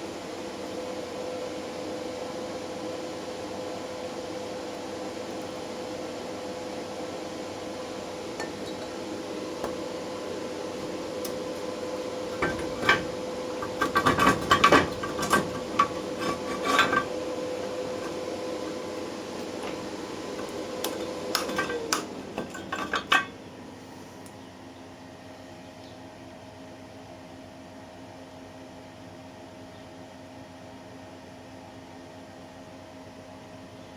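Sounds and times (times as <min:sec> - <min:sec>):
cutting machine hum: 0:04.7 - 0:23.7
steel parts clanking: 0:11.2 - 0:18.7, 0:19.4 - 0:23.4.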